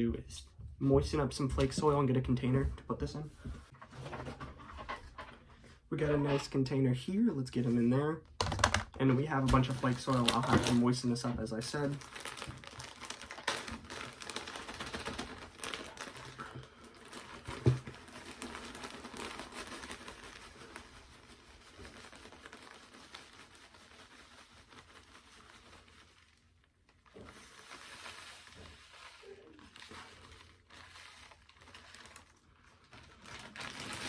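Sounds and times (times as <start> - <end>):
bag of soil rustling: 9.3 - 34.0.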